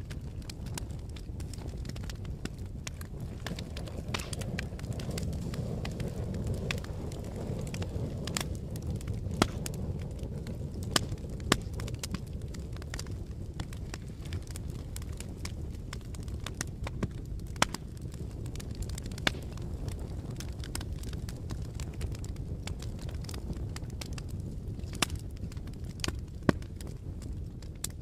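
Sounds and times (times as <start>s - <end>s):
fire crackling and popping: 0.0s - 28.0s.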